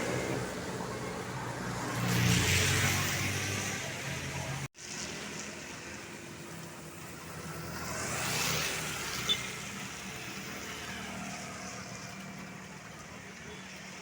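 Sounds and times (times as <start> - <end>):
vehicle passing by: 0.0 - 5.4.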